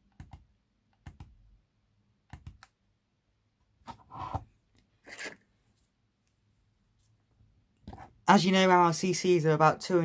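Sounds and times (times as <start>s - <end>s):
small objects scraping and rattling: 5.0s - 5.4s.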